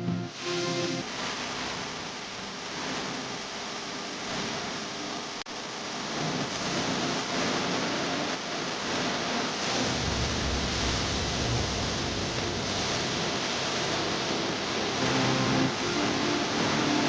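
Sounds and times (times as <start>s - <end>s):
steady rushing noise: 5.6s - 17.0s
low rumble: 9.7s - 13.9s.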